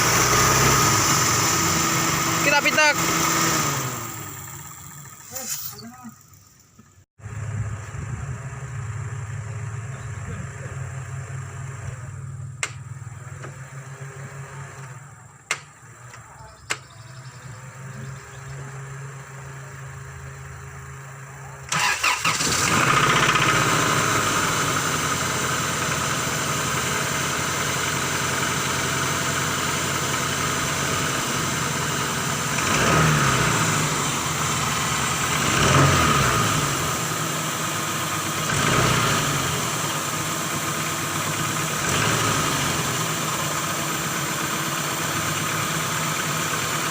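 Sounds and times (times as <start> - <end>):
engine revving: 0.0 - 6.6, 7.2 - 46.9
car engine starting and running: 0.0 - 46.9
sharp clicks: 15.5 - 17.0.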